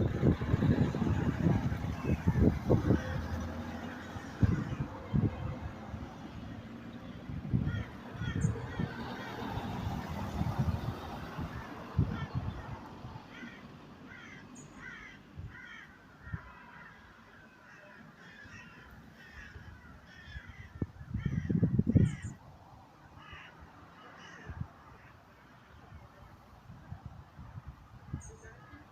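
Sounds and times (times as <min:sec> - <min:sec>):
birds cawing: 0:02.0 - 0:05.4, 0:07.5 - 0:09.6, 0:11.5 - 0:22.4, 0:23.1 - 0:25.7.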